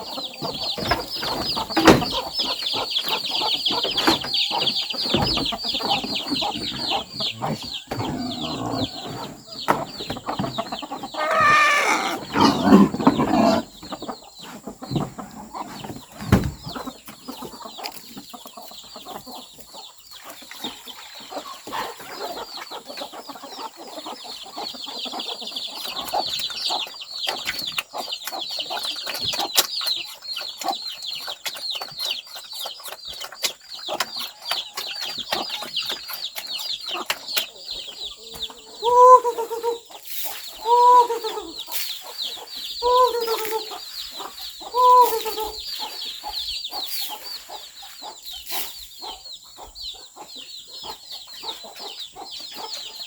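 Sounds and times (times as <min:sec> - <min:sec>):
chickens clucking: 0:00.0 - 0:53.0.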